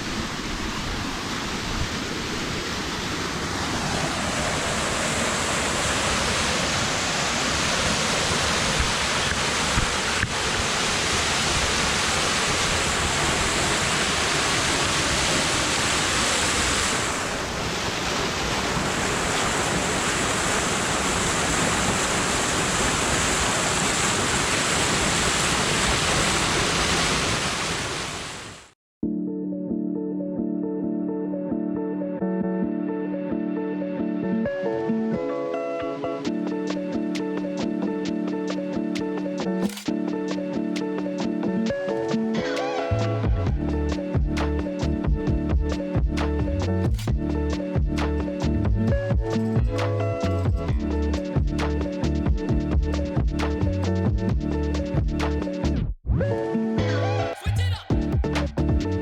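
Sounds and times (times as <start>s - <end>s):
waterfall rushing: 0.0s - 28.7s.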